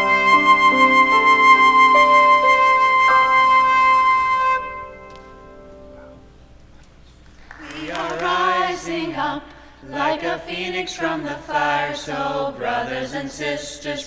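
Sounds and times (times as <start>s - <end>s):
low voices singing: 7.6s - 14.0s.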